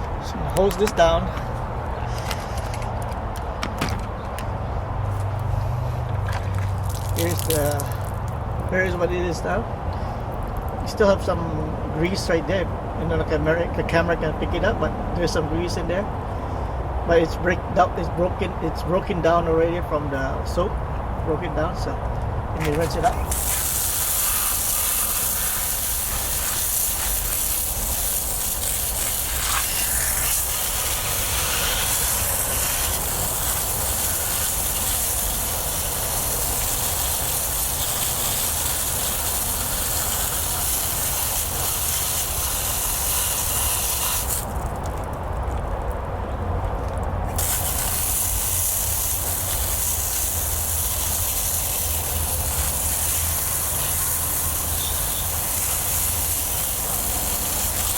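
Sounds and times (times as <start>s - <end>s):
hose spraying water: 6.3s - 8.3s, 22.7s - 45.0s, 47.3s - 57.9s.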